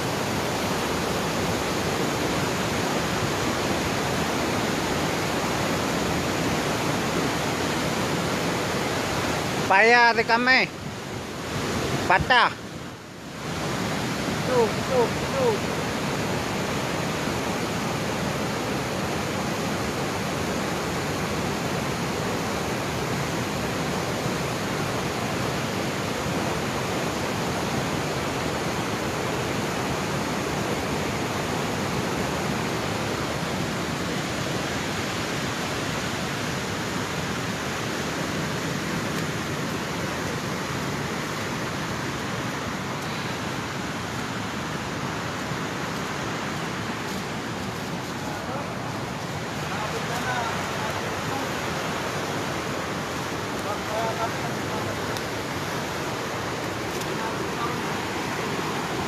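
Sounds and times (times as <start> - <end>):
floodwater rushing: 0.0 - 59.0.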